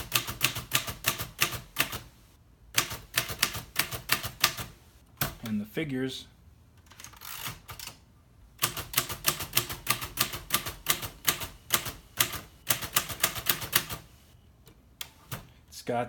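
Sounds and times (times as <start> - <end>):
manual typewriter typing: 0.0 - 2.1, 2.8 - 5.6, 6.9 - 8.0, 8.6 - 14.1.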